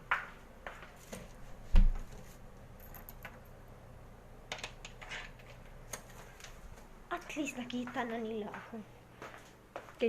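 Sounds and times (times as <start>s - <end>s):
dull thump: 1.7s - 2.1s.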